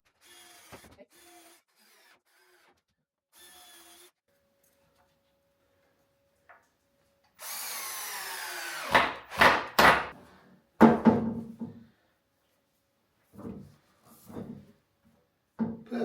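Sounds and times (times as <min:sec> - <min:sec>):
small power tool running: 0:00.1 - 0:02.7, 0:07.4 - 0:09.4
sharp knocks on wood: 0:08.9 - 0:10.1.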